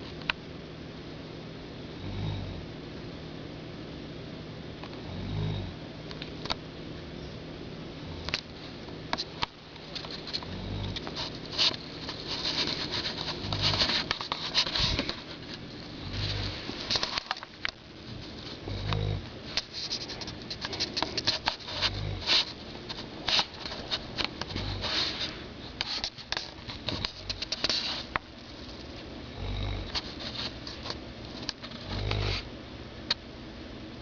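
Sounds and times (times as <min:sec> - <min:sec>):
low snores: 0:02.0 - 0:02.7, 0:05.0 - 0:05.8, 0:10.4 - 0:11.0, 0:16.0 - 0:16.8, 0:18.6 - 0:19.3, 0:21.8 - 0:22.5, 0:29.3 - 0:30.0, 0:31.8 - 0:32.5
sharp clicks and rustles: 0:08.2 - 0:29.1, 0:29.9 - 0:32.4.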